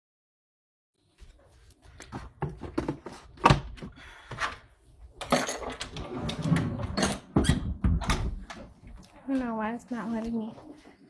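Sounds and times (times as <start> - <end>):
objects knocking and clattering: 2.0 - 9.2.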